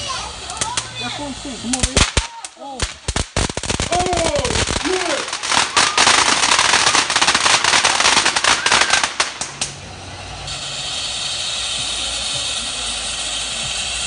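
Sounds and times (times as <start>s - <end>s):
firecrackers crackling: 0.0s - 14.0s
steady hiss: 0.0s - 14.0s.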